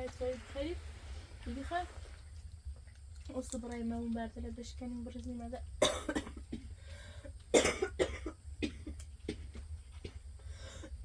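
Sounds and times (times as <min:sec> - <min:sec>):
person coughing: 0:05.8 - 0:06.7, 0:07.5 - 0:09.0.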